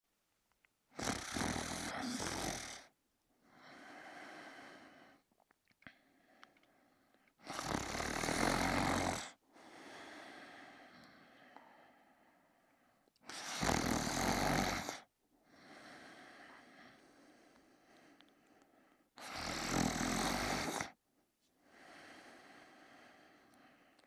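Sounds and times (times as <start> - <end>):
dog snoring: 1.0 - 2.9, 7.4 - 9.4, 13.3 - 15.1, 19.2 - 21.0
soft long breath: 3.4 - 5.3, 9.5 - 13.5, 15.4 - 19.4, 21.6 - 24.0.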